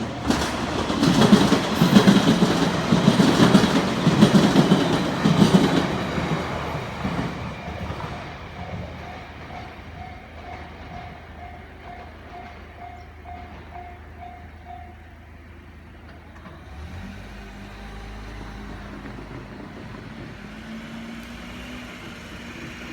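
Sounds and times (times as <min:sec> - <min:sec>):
level crossing warning bell: 0:02.8 - 0:15.8
low hum of road traffic: 0:14.1 - 0:22.9
vehicle engine pulling away: 0:16.4 - 0:22.9.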